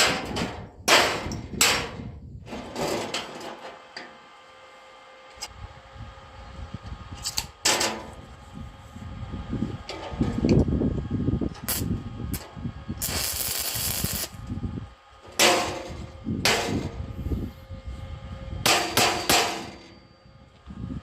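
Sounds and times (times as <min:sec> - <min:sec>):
metallic clanks of steel parts: 0:00.0 - 0:04.1, 0:18.7 - 0:20.2
burst of hissing noise: 0:13.0 - 0:14.4.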